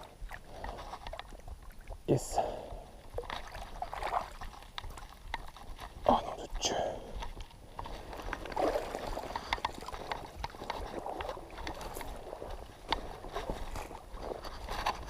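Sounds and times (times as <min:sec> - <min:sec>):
water splashing and sloshing: 0:00.0 - 0:15.0
small clicks and knocks: 0:09.3 - 0:10.8.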